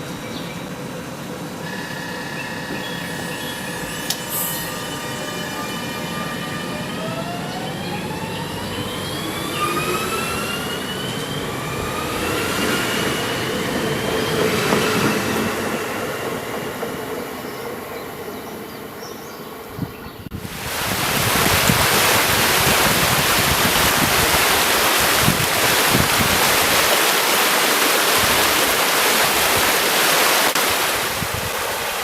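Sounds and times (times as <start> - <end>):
train accelerating with rising whine: 0.0 - 19.0.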